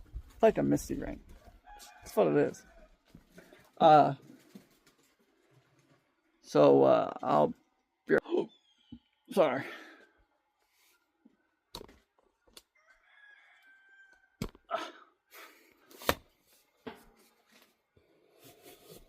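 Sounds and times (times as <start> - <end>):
rooster crowing: 12.8 - 14.4.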